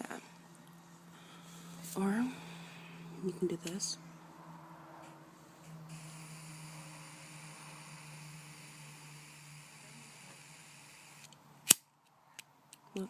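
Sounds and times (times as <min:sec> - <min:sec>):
gas hissing from lighter: 0:05.9 - 0:11.3.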